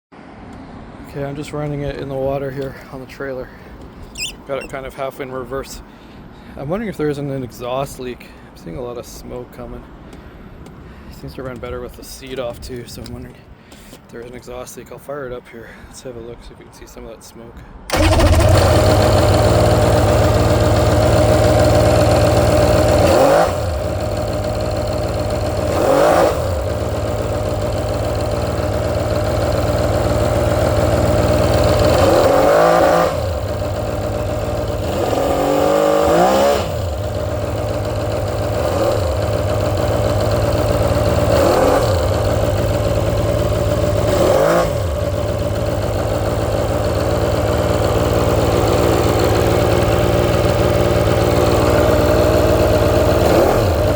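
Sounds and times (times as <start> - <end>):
two-stroke engine revving: 17.9 - 53.9.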